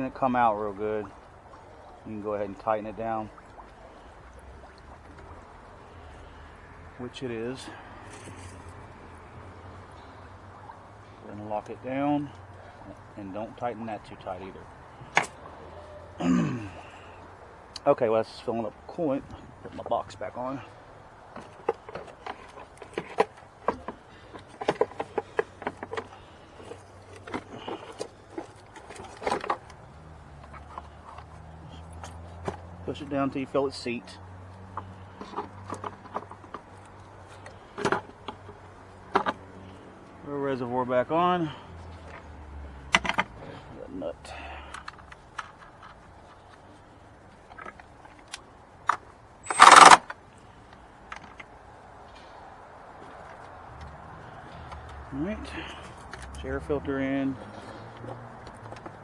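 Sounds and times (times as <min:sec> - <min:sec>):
hand tools clicking and knocking: 0:21.2 - 0:32.9, 0:34.6 - 0:39.8, 0:47.4 - 0:51.6, 0:57.6 - 0:59.0.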